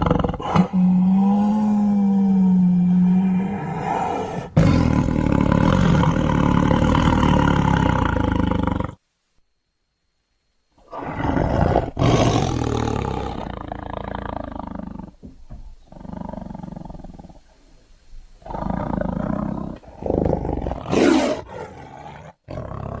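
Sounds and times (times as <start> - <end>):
big cat roars and growls: 0.0 - 9.0, 10.8 - 15.2, 18.4 - 23.0.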